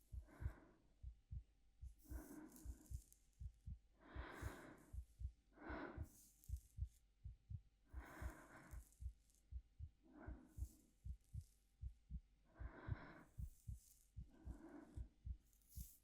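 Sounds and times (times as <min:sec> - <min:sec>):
soft slow breathing: 0:00.0 - 0:00.9, 0:01.9 - 0:16.0
heartbeat thumping: 0:00.0 - 0:16.0.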